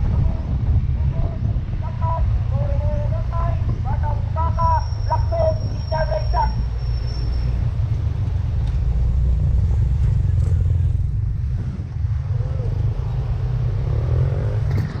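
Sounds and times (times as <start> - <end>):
wind on microphone: 0.0 - 4.3
road noise: 0.0 - 15.0.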